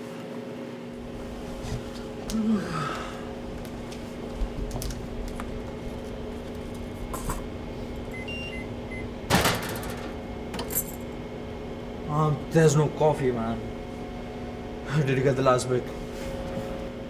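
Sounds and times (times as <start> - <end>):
steady machine hum: 0.0 - 17.0
coffee machine beeping: 7.2 - 10.9.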